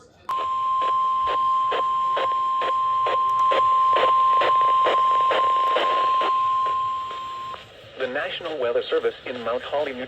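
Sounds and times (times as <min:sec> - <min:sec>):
steady alarm tone over radio: 0:00.3 - 0:07.6
faint static crackles: 0:00.3 - 0:10.0.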